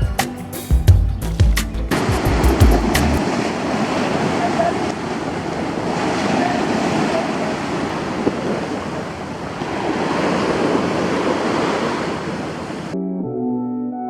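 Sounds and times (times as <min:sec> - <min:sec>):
wind buffeting microphone: 0:01.8 - 0:13.0
sea waves washing ashore: 0:01.9 - 0:13.0.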